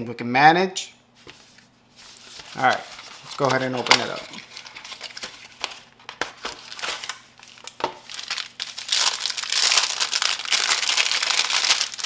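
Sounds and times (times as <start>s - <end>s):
packaging crinkling: 2.0s - 12.0s
packaging clicks and rustles: 2.4s - 12.0s.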